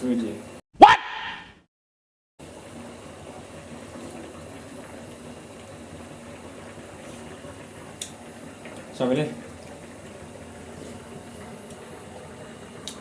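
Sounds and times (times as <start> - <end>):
pot boiling with low bubbling: 2.4 - 13.0.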